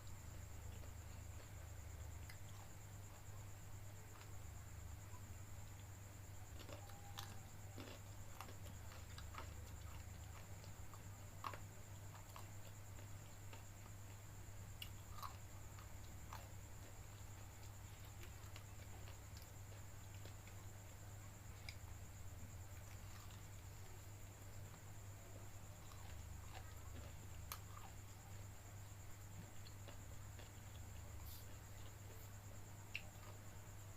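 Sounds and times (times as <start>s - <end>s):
steady low hum: 0.0s - 33.9s
person chewing noodles: 0.7s - 2.7s, 6.4s - 13.9s, 14.7s - 20.6s, 25.7s - 28.4s, 29.4s - 33.5s.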